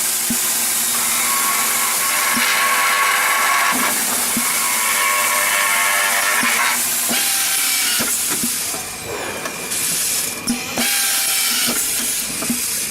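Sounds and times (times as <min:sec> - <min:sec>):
high machine whine: 0:00.0 - 0:12.9
machining centre hissing: 0:00.0 - 0:12.9
sharp clicks and knocks: 0:06.2 - 0:09.6, 0:10.5 - 0:12.7.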